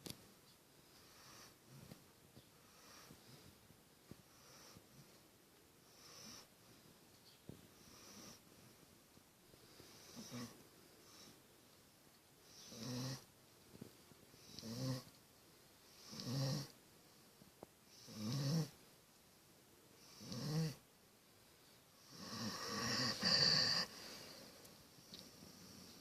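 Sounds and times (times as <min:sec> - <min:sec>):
dog snoring: 0:01.0 - 0:01.8, 0:04.3 - 0:05.0, 0:05.9 - 0:06.5, 0:07.8 - 0:08.4, 0:09.9 - 0:11.4, 0:12.4 - 0:13.3, 0:14.4 - 0:15.1, 0:15.9 - 0:16.8, 0:17.9 - 0:18.8, 0:20.0 - 0:20.8, 0:22.0 - 0:24.0.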